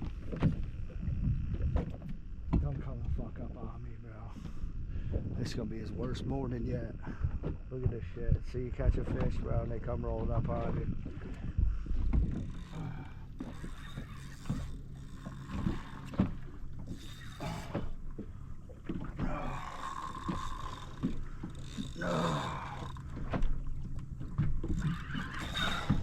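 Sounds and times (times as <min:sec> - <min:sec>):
boat motor humming: 0:00.0 - 0:26.0
knocks on boat: 0:01.6 - 0:03.3, 0:07.3 - 0:12.6.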